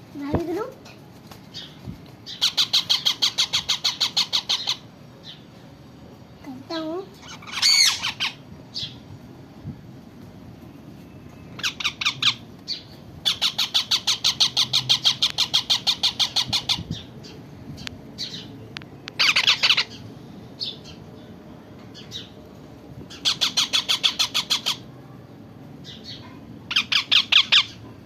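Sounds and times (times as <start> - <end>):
parrot squawking: 2.3 - 4.8, 7.2 - 8.4, 11.6 - 17.1, 19.2 - 20.0, 23.1 - 24.9, 26.7 - 27.8.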